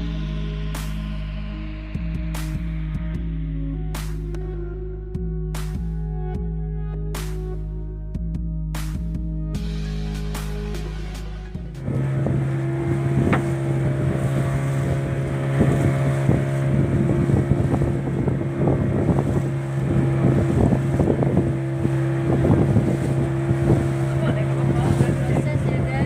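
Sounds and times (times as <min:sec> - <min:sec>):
motorboat engine running: 0:00.0 - 0:26.0
water splashing against hull: 0:09.6 - 0:26.0
wind buffeting microphone: 0:11.6 - 0:26.0.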